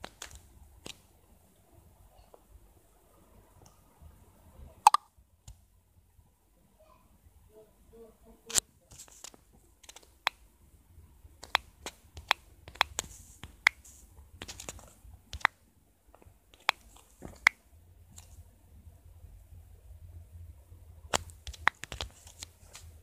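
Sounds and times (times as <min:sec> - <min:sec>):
sharp clicks and taps: 0:11.4 - 0:17.6, 0:21.1 - 0:22.8.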